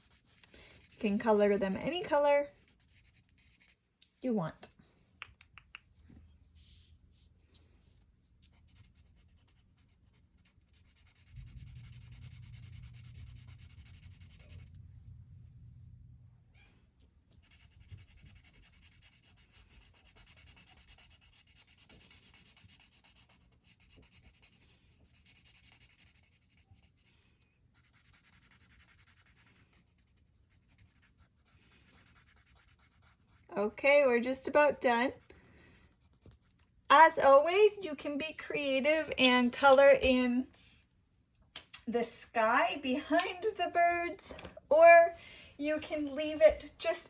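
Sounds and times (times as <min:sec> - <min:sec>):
marker scratching on paper: 0:00.0 - 0:03.8, 0:08.4 - 0:14.8, 0:17.3 - 0:36.9.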